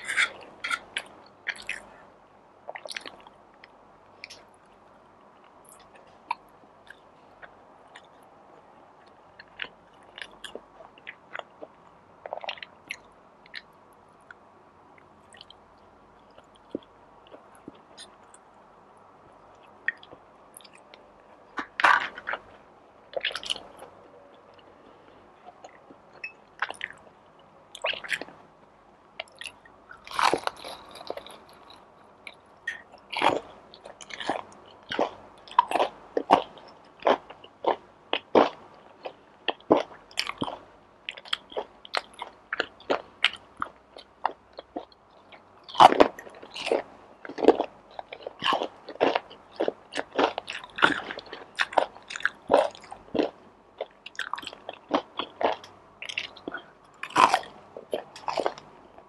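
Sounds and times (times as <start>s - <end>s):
crunchy chewing: 0.0s - 2.0s, 19.5s - 24.7s, 25.5s - 28.4s, 29.2s - 58.7s.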